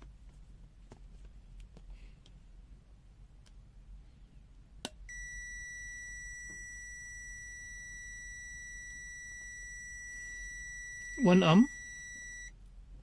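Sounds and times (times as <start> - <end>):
multimeter beep: 5.1 - 12.6.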